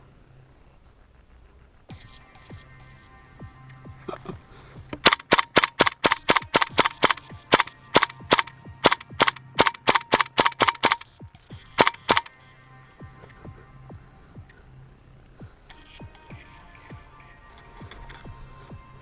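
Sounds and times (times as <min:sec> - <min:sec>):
airsoft gun shots: 0:05.0 - 0:11.0, 0:11.8 - 0:12.3
gun slide clacking: 0:05.0 - 0:11.1, 0:11.8 - 0:12.3.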